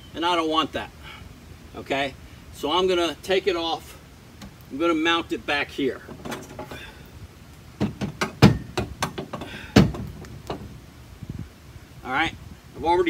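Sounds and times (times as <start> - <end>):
metal hardware knocks and clunks: 6.0 - 6.8, 7.8 - 10.7.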